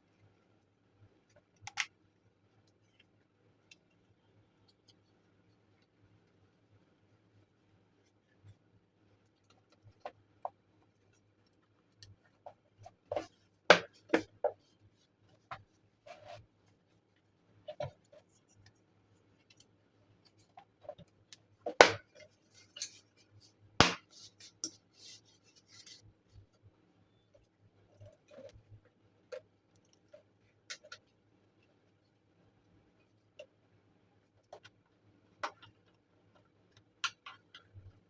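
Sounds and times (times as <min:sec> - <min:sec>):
plastic parts clicking and knocking: 0:01.2 - 0:02.1, 0:28.0 - 0:31.2, 0:34.4 - 0:38.0
scratching and rubbing: 0:09.6 - 0:19.4, 0:22.1 - 0:26.6.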